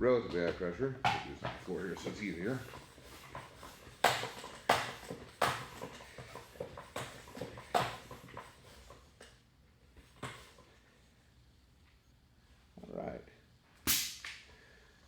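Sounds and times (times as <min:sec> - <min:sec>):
hand pump strokes with air hiss: 0:00.7 - 0:11.3.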